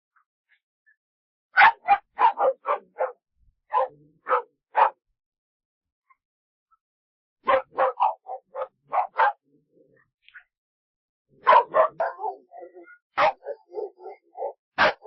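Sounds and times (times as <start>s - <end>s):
dog barking: 1.5s - 5.0s, 7.4s - 10.5s, 11.4s - 15.0s.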